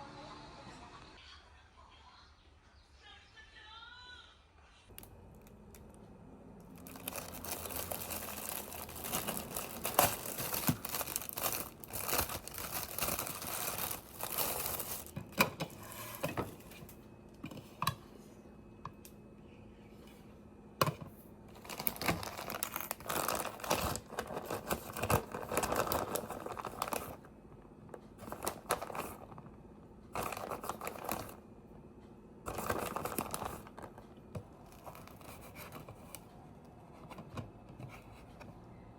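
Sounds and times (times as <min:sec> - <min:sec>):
faint steady hum: 0:00.0 - 0:38.9
packaging crinkling and tearing: 0:06.6 - 0:15.4, 0:21.6 - 0:27.2, 0:28.2 - 0:29.4, 0:30.2 - 0:31.4, 0:32.5 - 0:34.0, 0:34.6 - 0:35.8.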